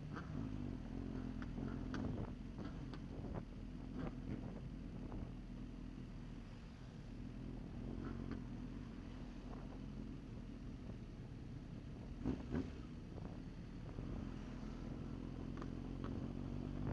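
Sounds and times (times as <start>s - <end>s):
vehicle engine humming: 0.0s - 16.9s
faint clicks: 1.1s - 3.4s, 14.8s - 16.9s.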